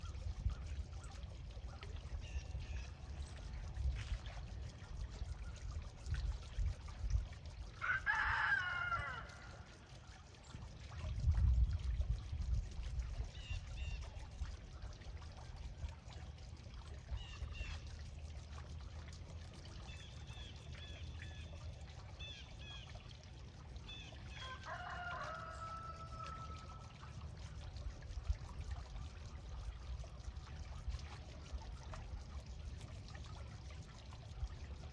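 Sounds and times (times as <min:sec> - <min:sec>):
rooster crowing: 0:07.8 - 0:09.6, 0:24.4 - 0:26.8.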